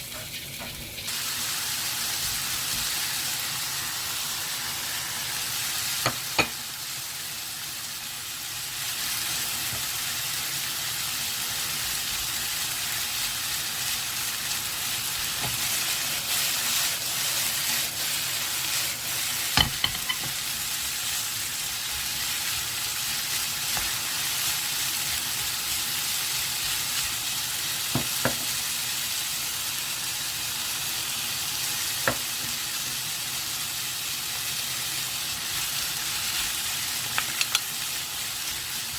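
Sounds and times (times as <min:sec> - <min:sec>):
potato strips sizzling in oil: 0:00.0 - 0:38.9
utensil clicking against pan: 0:37.1 - 0:37.7.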